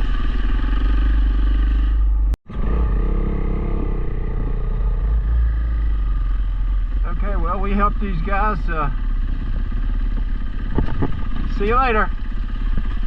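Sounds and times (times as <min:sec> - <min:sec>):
motorcycle engine running: 0:00.0 - 0:13.0
wind rumble on microphone: 0:09.4 - 0:11.6, 0:12.4 - 0:13.0.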